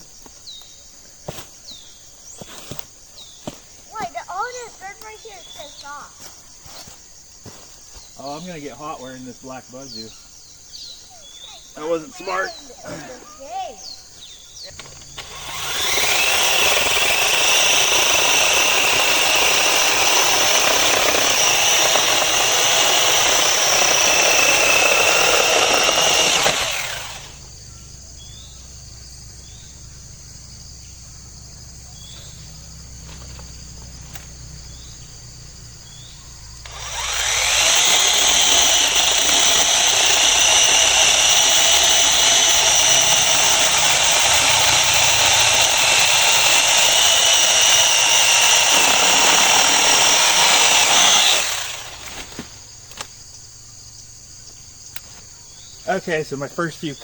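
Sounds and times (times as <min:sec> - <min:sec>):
faint chirps: 0:00.0 - 0:06.9, 0:07.6 - 0:15.2, 0:27.4 - 0:36.7
electric chainsaw cutting wood: 0:14.7 - 0:27.6, 0:35.9 - 0:53.1.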